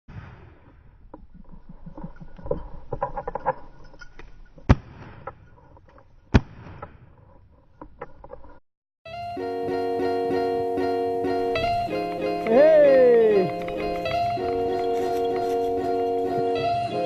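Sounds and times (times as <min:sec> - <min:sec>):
shotgun shots: 0:00.1 - 0:00.8
rustling in field cover: 0:11.6 - 0:17.0.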